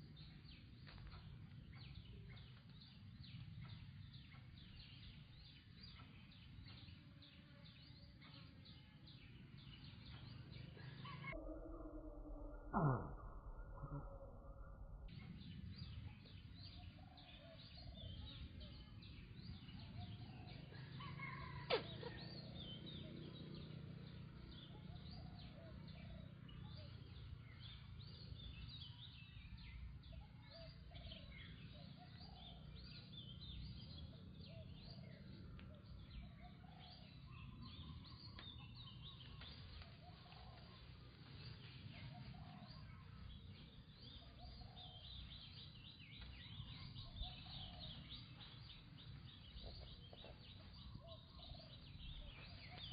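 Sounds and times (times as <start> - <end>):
low background rumble: 0.0 - 21.2
birds chirping and calling: 0.0 - 52.9.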